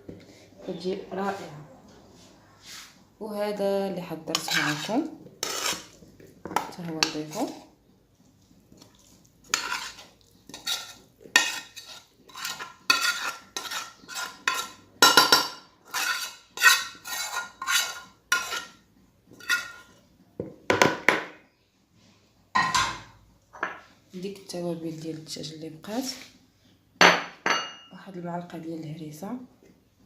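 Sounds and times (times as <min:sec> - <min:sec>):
metal spoon scraping cookware: 0:04.3 - 0:06.0, 0:09.5 - 0:18.8, 0:19.4 - 0:20.0.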